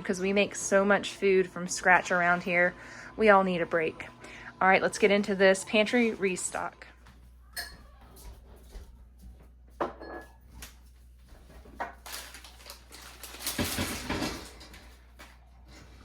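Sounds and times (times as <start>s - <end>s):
steady low hum: 0.0s - 11.8s
rustling clatter: 11.4s - 15.4s.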